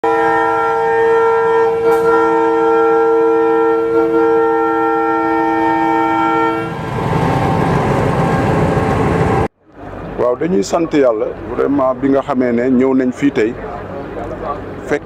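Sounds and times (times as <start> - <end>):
train horn blast: 0.0 - 7.5.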